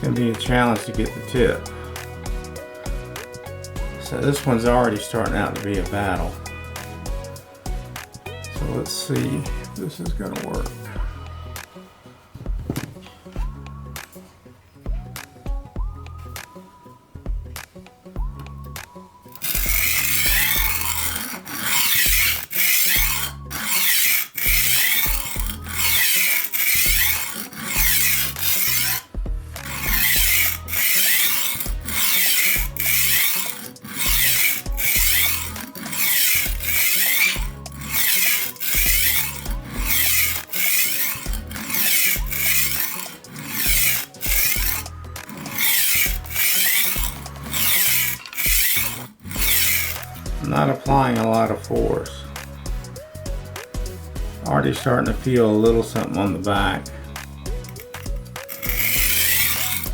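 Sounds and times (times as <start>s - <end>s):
knife sharpener rasping on blade: 19.3s - 50.3s, 57.5s - 59.9s.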